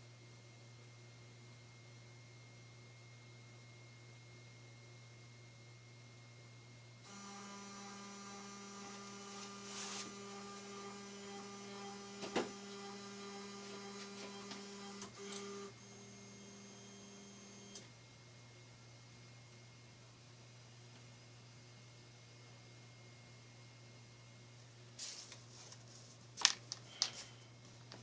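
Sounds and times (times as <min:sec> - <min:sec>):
machine motor whine: 0:07.0 - 0:18.0.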